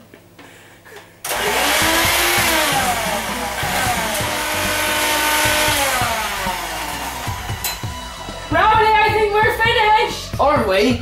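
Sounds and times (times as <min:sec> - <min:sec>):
electric mixer whisking: 0:01.3 - 0:08.5.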